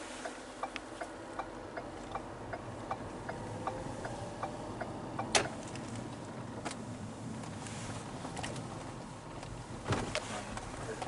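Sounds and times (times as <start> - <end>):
turn signal clicking: 0.2 - 6.8.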